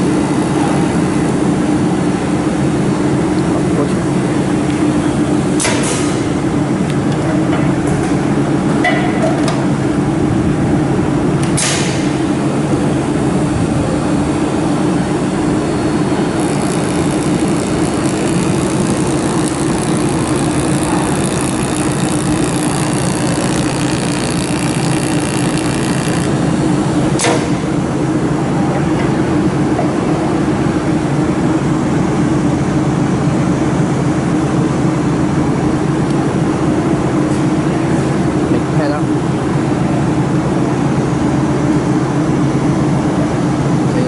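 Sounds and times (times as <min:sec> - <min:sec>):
welding machine humming: 0:11.2 - 0:28.4
sharp clicks: 0:16.4 - 0:26.3.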